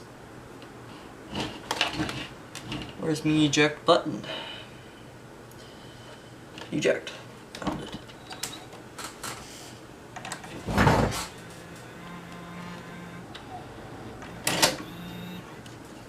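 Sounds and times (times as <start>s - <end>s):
faint motor whirr: 0.0s - 16.0s
cassette mechanism clicking and clunking: 14.2s - 15.8s.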